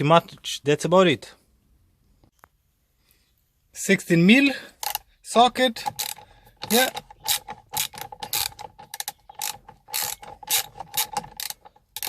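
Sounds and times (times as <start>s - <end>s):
ratchet wrench clicking: 4.8s - 5.1s, 5.8s - 12.0s.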